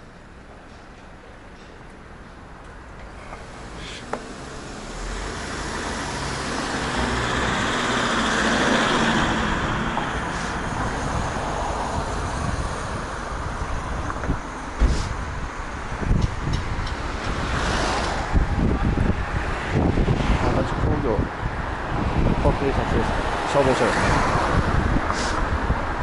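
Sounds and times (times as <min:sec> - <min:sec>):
motor vehicle passing: 0:03.4 - 0:13.1
wind noise on microphone: 0:05.5 - 0:26.0.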